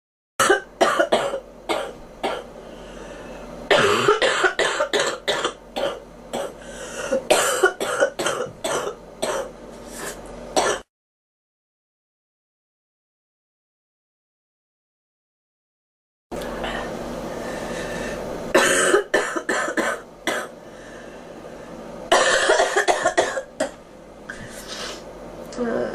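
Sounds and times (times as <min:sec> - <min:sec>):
girl coughing: 0:00.4 - 0:02.5, 0:03.7 - 0:09.5, 0:10.6 - 0:10.8, 0:18.5 - 0:20.5, 0:22.1 - 0:23.8.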